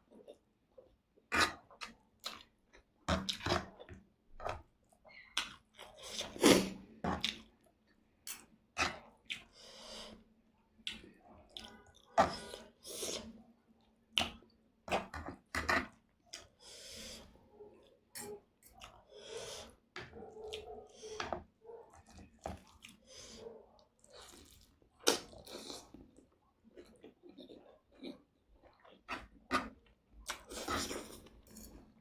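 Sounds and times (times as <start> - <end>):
wet chewing and mouth smacks: 22.0 - 23.0.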